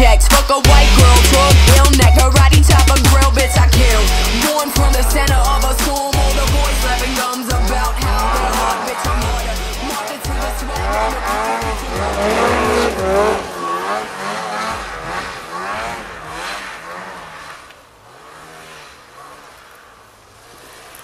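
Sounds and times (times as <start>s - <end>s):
heavy music bass beat: 0.0s - 16.3s
snowmobile engine revving: 0.0s - 21.0s.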